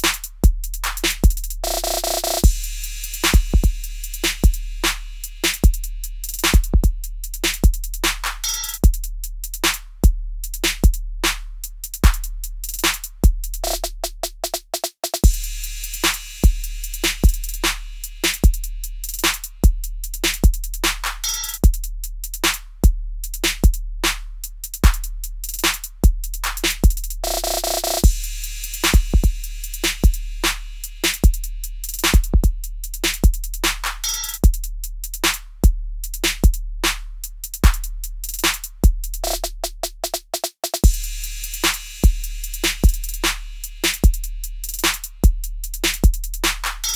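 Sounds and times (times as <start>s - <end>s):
electronic music with drum-machine beat: 0.0s - 9.8s, 10.5s - 22.6s, 24.8s - 35.4s, 36.1s - 46.9s.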